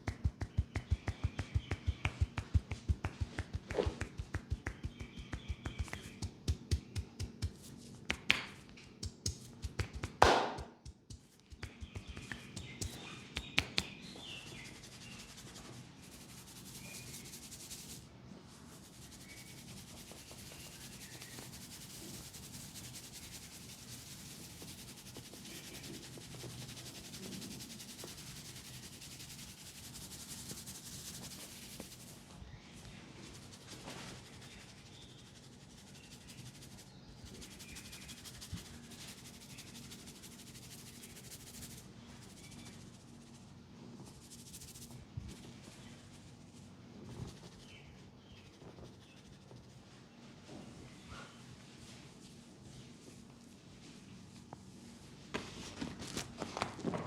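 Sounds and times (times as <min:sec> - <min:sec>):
hands rubbing skin and hair: 0:00.0 - 0:51.0, 0:51.6 - 0:56.9
hand strikes on head: 0:09.8 - 0:11.0.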